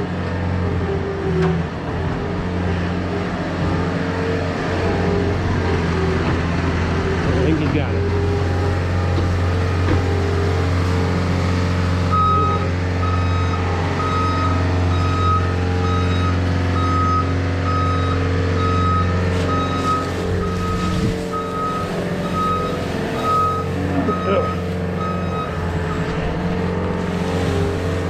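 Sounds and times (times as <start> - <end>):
farm machine engine running: 0.0 - 28.0
reversing alarm beeping: 12.0 - 28.0.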